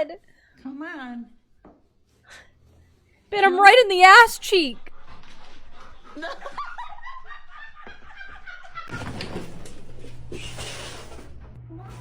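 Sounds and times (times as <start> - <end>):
quiet snickering and laughter: 6.0 - 9.1.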